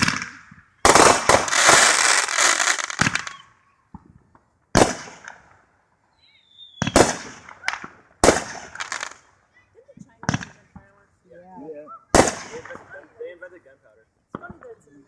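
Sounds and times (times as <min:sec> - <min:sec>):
fireworks bangs: 0:00.0 - 0:05.6, 0:06.2 - 0:11.0, 0:12.1 - 0:13.4
high firework whistle: 0:00.8 - 0:03.7, 0:06.1 - 0:07.8.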